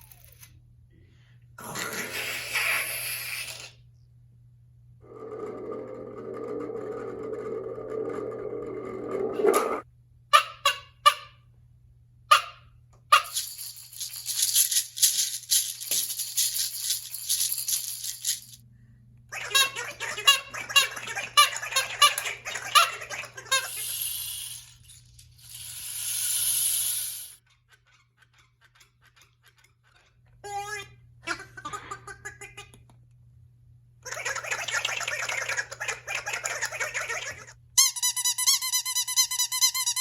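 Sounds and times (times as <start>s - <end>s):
fast rattling patter: 13.1s - 18.6s
hissing rattle: 23.6s - 27.4s.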